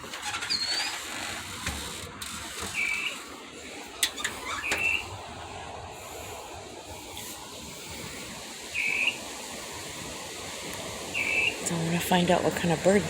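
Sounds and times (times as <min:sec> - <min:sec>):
background hiss: 0:00.0 - 0:13.0
bird calling: 0:02.7 - 0:03.2, 0:04.2 - 0:05.1, 0:08.7 - 0:09.2, 0:11.1 - 0:11.6.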